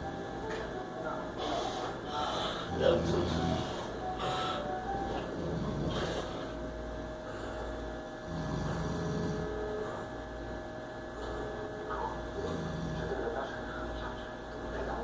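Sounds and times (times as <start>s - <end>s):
steady electrical hum: 0.0s - 15.0s
person snoring: 1.4s - 6.6s, 7.2s - 10.3s, 11.1s - 11.8s, 12.4s - 13.3s.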